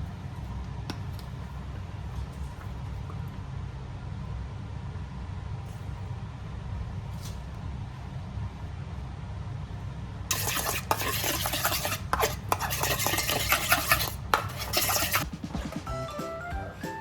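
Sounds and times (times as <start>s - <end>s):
utensil scraping against dishware: 10.3s - 15.3s
music: 15.2s - 17.0s.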